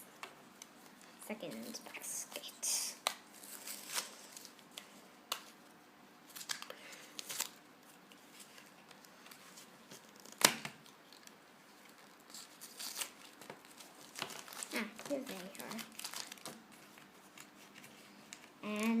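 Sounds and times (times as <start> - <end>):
packaging rustling and tearing: 3.3 - 4.8, 6.3 - 7.6, 8.3 - 19.0.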